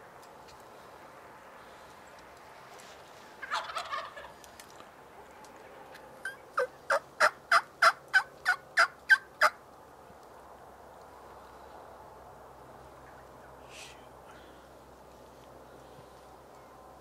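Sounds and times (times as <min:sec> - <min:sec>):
turkey gobbling: 0:03.4 - 0:04.4, 0:06.2 - 0:09.6.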